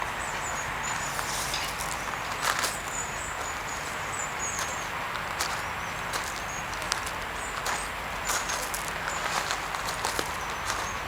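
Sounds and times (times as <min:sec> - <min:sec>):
steady hiss: 0:00.0 - 0:05.1
small birds chirping: 0:00.1 - 0:11.0.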